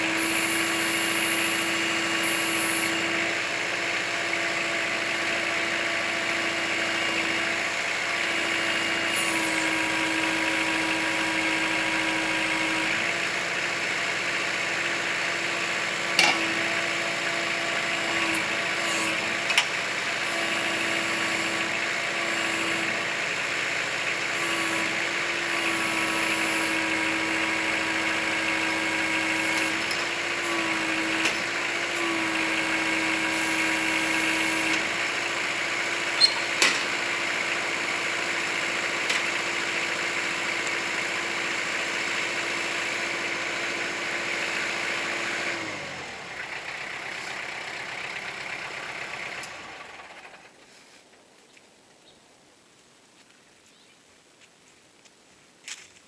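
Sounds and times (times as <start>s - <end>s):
tractor diesel engine running: 0.0s - 50.7s.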